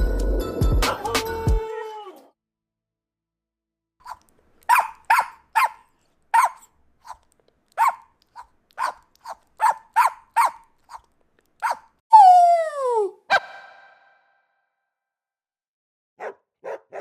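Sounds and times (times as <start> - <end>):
dog barking: 4.0 - 11.0, 11.6 - 11.9, 16.2 - 17.0.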